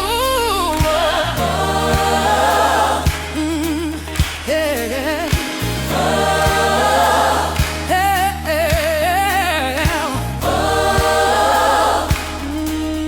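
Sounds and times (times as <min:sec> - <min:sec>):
bass: 0:00.0 - 0:13.0
choir holding chords: 0:00.7 - 0:03.8, 0:05.3 - 0:08.4, 0:10.2 - 0:13.0
kick drum: 0:03.1 - 0:03.4, 0:05.3 - 0:05.6, 0:09.8 - 0:10.1.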